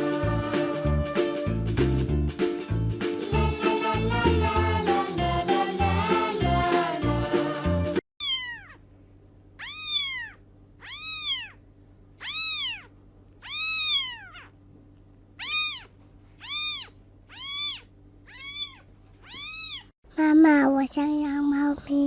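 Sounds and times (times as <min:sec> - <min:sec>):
cat meowing: 0:08.2 - 0:08.8, 0:09.6 - 0:11.6, 0:12.2 - 0:14.6, 0:15.4 - 0:19.9
faint steady hum: 0:08.2 - 0:22.0.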